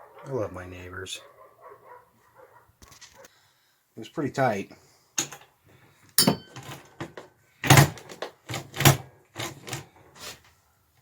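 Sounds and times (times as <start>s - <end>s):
metallic ringing knock: 6.2s - 6.7s
tools knocking on workbench: 6.2s - 6.8s.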